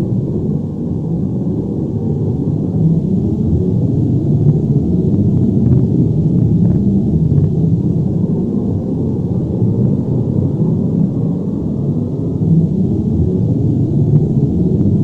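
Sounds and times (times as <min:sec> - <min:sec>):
deep avalanche rumble: 0:00.0 - 0:15.0.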